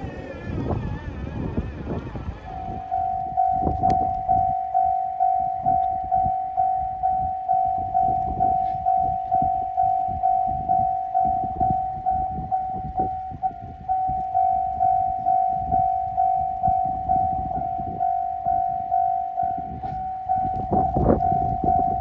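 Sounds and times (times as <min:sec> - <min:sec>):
low rumble: 0:00.0 - 0:22.0
level-crossing electronic bell: 0:02.2 - 0:22.0.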